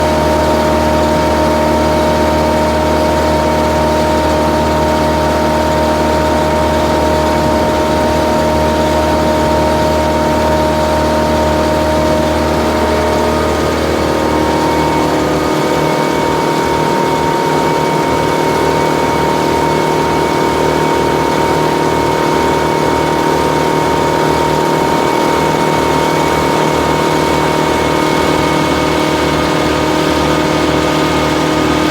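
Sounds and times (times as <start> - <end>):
machinery engine running: 0.0 - 31.9.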